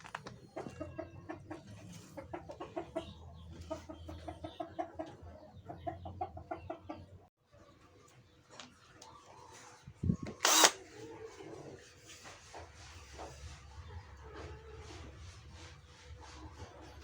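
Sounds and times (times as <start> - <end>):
fowl clucking: 0.6 - 7.1.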